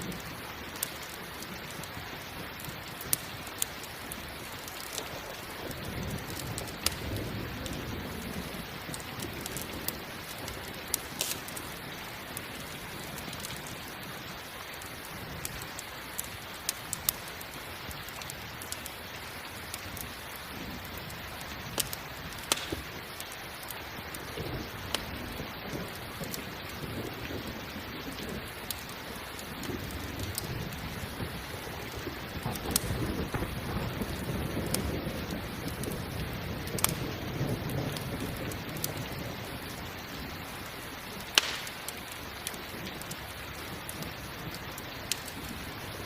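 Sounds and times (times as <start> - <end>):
campfire crackling: 0.0 - 46.0
rain hissing: 0.0 - 46.0
distant thunder rolling: 4.8 - 13.8, 24.2 - 40.3.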